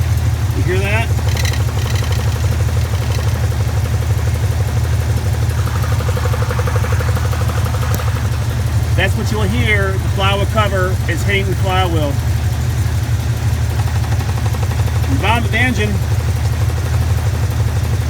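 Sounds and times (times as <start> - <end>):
car engine idling: 0.0 - 18.0
rapid even knocking: 0.6 - 8.6.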